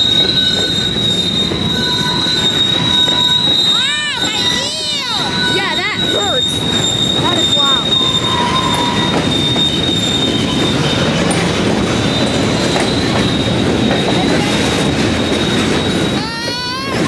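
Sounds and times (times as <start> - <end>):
high wheel squeal: 0.0 - 17.0
train wheels rumbling on rails: 0.0 - 17.0.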